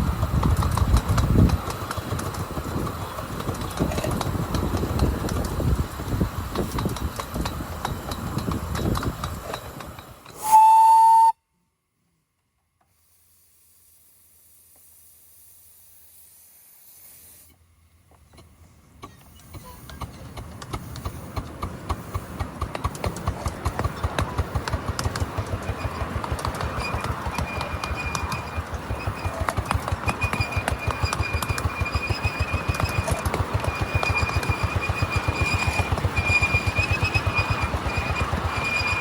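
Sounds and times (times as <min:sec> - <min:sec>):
steam locomotive running: 0:00.0 - 0:11.3, 0:18.6 - 0:39.0
steam locomotive whistle: 0:10.4 - 0:11.4, 0:30.2 - 0:39.0
faint steam hiss: 0:12.8 - 0:25.2.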